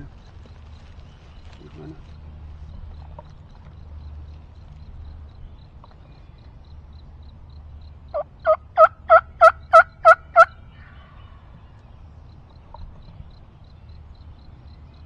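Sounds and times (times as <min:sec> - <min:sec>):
turkey yelping: 0:08.5 - 0:10.5.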